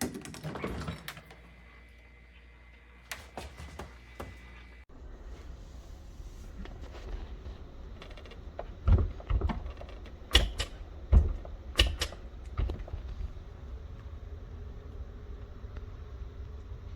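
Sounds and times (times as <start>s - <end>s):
low steady rumble: 4.8s - 16.9s
sharp knocks and clicks: 8.0s - 13.1s.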